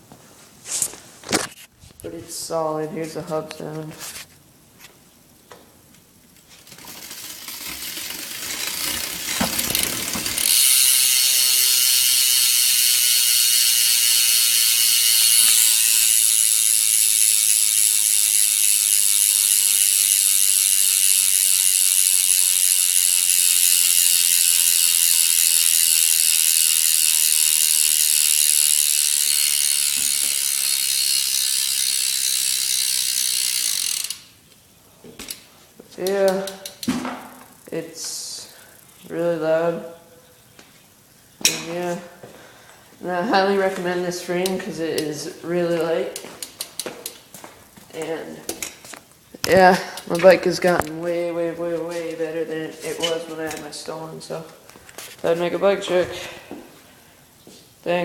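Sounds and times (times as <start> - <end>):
bike hub ratcheting buzz: 6.4 - 34.6, 36.0 - 39.2, 44.1 - 47.2.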